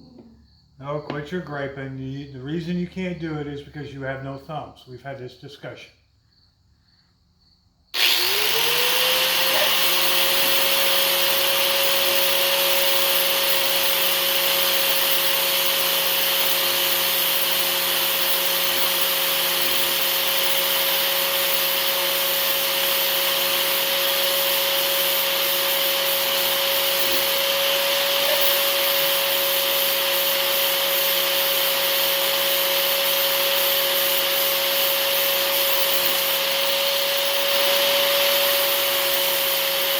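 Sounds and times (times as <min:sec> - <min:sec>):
angle grinder whining: 0:07.9 - 0:39.9.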